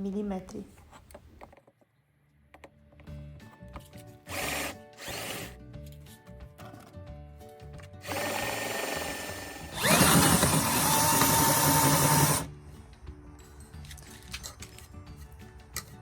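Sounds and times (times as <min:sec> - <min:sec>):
power drill boring into wood: 0:04.3 - 0:05.6, 0:08.0 - 0:12.5.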